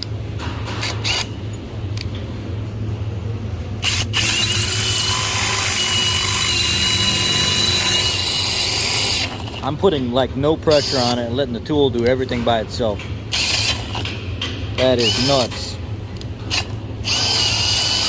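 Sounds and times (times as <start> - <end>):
power drill cutting metal: 3.8 - 9.6, 13.3 - 14.0, 15.0 - 15.5, 16.5 - 18.0.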